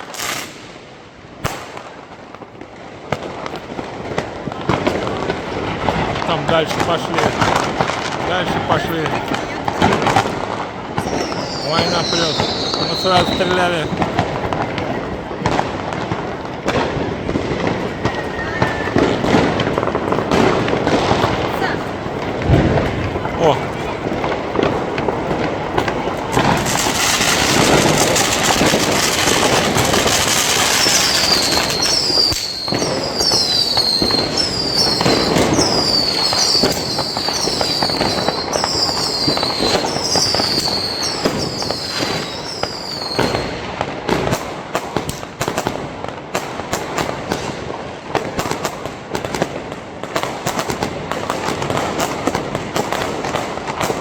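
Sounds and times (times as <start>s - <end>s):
fireworks crackling and banging: 0.0s - 54.0s
falling firework whistles: 11.0s - 14.2s, 16.7s - 21.2s, 26.3s - 43.6s.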